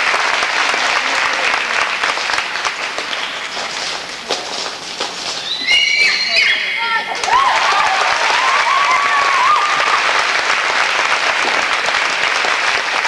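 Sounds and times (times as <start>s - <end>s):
audience applauding: 0.0s - 13.0s
person cheering: 6.1s - 10.3s.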